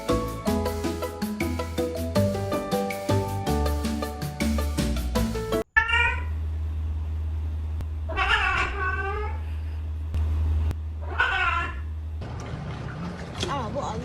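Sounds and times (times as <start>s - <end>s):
cat meowing: 5.8s - 6.4s, 8.1s - 9.4s, 11.0s - 11.9s.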